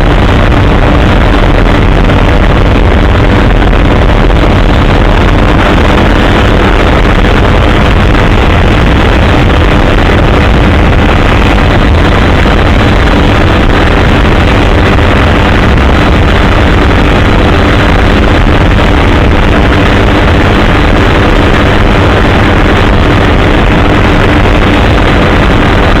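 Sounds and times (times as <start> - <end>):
helicopter engine and rotor: 2.2 - 8.2.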